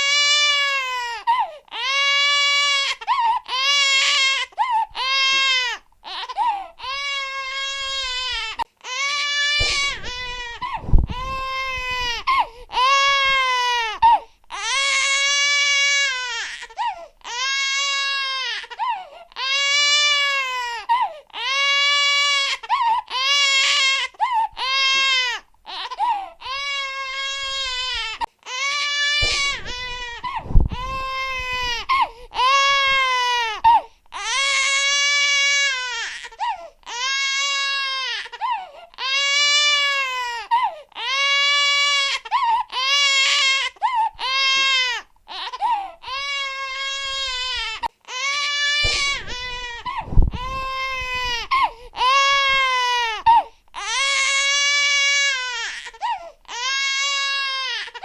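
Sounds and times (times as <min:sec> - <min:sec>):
infant crying: 0:00.0 - 0:58.0
dull low thump: 0:09.6 - 0:12.5, 0:29.2 - 0:32.1, 0:48.8 - 0:52.6.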